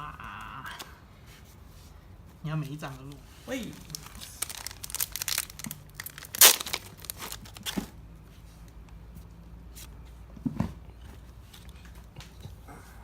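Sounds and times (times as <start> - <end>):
foil wrapper crinkling and tearing: 3.6 - 7.8.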